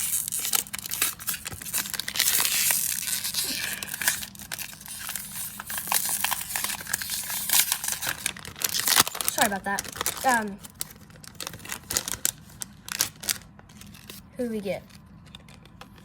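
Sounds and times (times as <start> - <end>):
plastic bag ripping and crinkling: 0.0 - 15.8.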